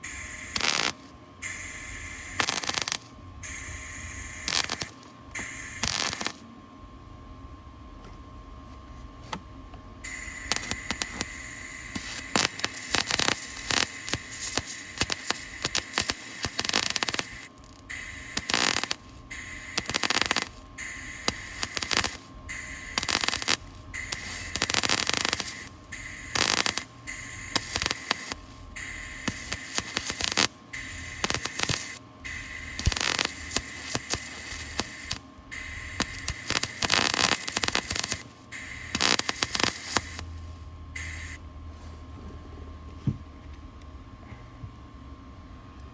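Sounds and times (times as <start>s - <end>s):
welding arc crackling: 0.0s - 6.4s, 10.1s - 41.4s.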